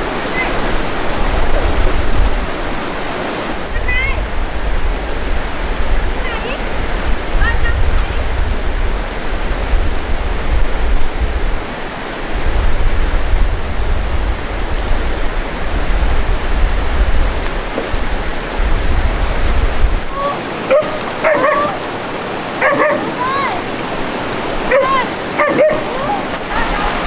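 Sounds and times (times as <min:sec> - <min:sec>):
stream water rushing: 0:00.0 - 0:27.0
wind buffeting microphone: 0:00.0 - 0:27.0
dog whining and yipping: 0:20.2 - 0:21.8.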